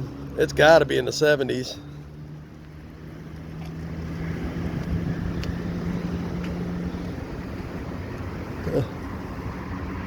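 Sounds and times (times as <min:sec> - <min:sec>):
wind buffeting microphone: 0:03.8 - 0:10.0.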